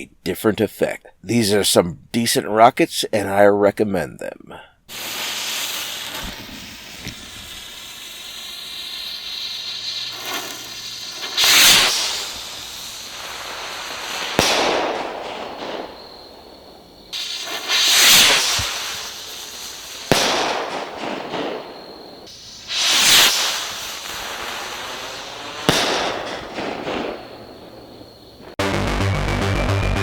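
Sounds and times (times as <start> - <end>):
firework rocket bursting crack: 4.9 - 28.6
firework rockets launching hiss: 4.9 - 28.6.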